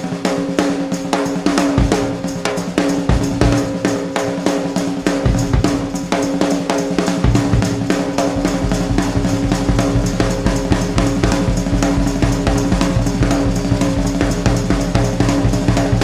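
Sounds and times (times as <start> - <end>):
drum-kit beat: 0.0 - 16.0
low bass notes: 7.3 - 16.0.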